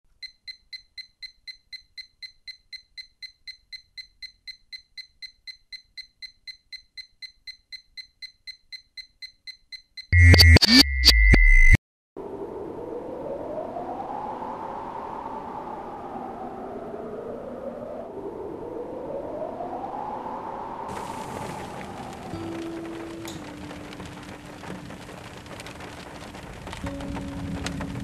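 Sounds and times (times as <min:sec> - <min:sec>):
fast electronic beeping: 0:00.2 - 0:11.8
synthesized sound effect burst: 0:10.2 - 0:11.8.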